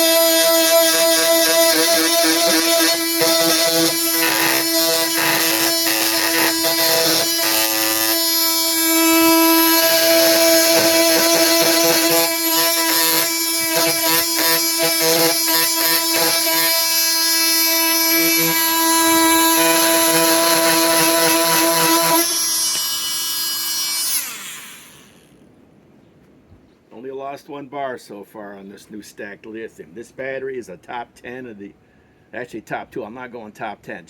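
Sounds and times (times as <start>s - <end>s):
oscillating multi-tool cutting wood: 0.0s - 25.4s.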